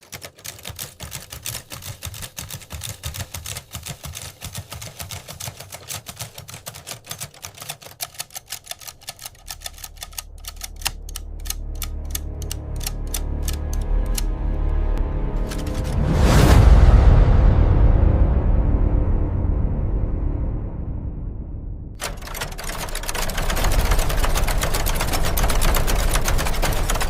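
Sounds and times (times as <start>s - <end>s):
typewriter keys clacking: 0.0s - 14.3s, 15.4s - 16.0s, 22.0s - 27.0s.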